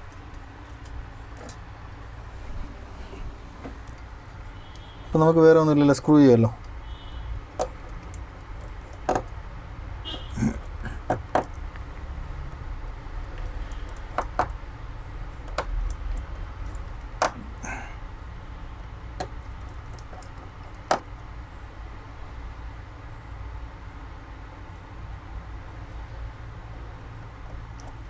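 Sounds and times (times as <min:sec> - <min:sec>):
small tools clicking and tapping: 0:00.0 - 0:01.6, 0:07.4 - 0:09.4, 0:10.5 - 0:14.6, 0:15.4 - 0:17.5, 0:19.2 - 0:21.1, 0:27.4 - 0:28.0
low steady hum: 0:00.0 - 0:28.0.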